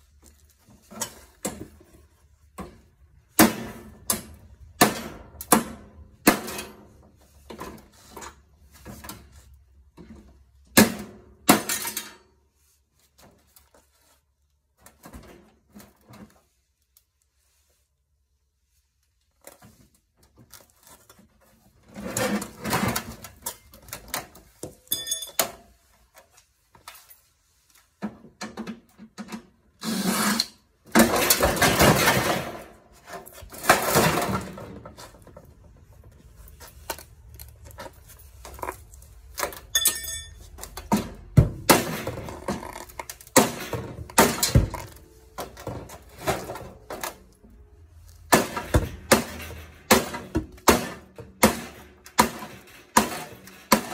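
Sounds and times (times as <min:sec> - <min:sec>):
metal parts clanking and scraping: 0:24.7 - 0:25.7, 0:28.8 - 0:53.9
metallic ring: 0:24.9 - 0:25.4, 0:39.7 - 0:40.5.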